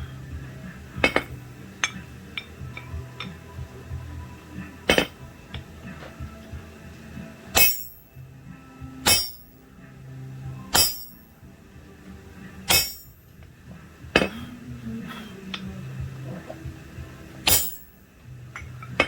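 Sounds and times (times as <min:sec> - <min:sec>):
hammer striking steel anvil: 0:01.0 - 0:03.4, 0:04.9 - 0:05.2, 0:07.5 - 0:08.2, 0:09.0 - 0:09.6, 0:10.7 - 0:11.3, 0:12.7 - 0:13.4, 0:14.2 - 0:14.5, 0:17.4 - 0:18.0.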